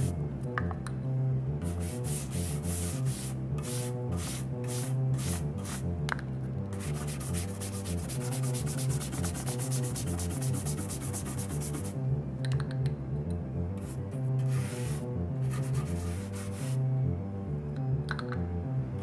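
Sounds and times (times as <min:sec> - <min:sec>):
synthesizer bass line: 0:00.0 - 0:19.0
rhythmic rubbing strokes: 0:01.6 - 0:06.0, 0:06.7 - 0:12.0, 0:13.8 - 0:16.9.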